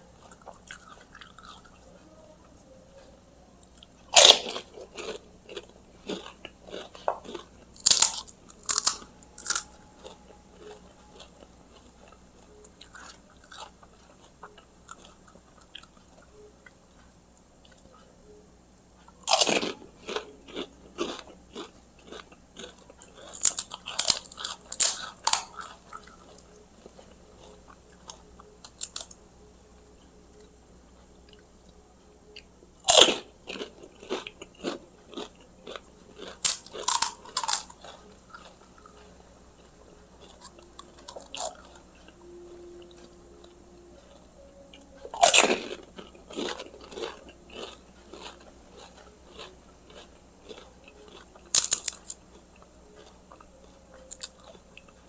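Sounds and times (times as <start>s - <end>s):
chewing: 0.2s - 2.1s, 3.0s - 18.1s, 18.9s - 29.2s, 32.4s - 55.0s
crisp shells crunching: 32.9s - 43.1s, 45.1s - 54.6s.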